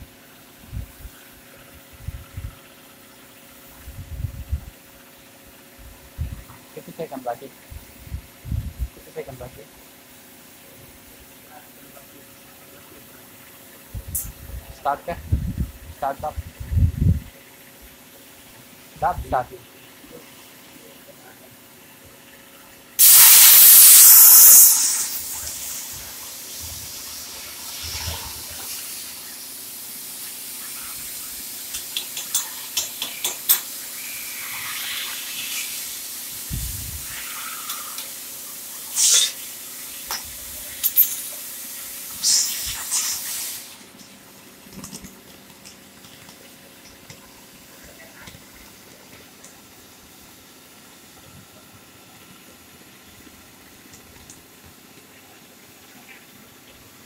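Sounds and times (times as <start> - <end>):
cutting torch hissing: 23.0 - 44.0
crackles: 42.2 - 49.6.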